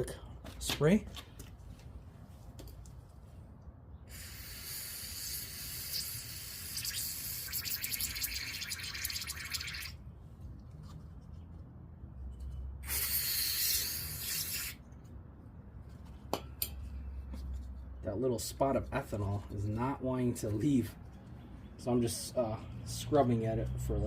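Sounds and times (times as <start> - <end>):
aerosol spray hissing: 4.1 - 7.6, 12.8 - 14.8.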